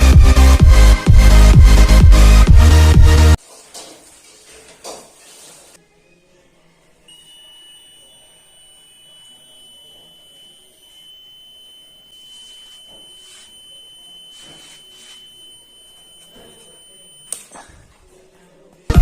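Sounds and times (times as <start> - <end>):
high-pitched alarm buzzer: 7.1 - 17.4.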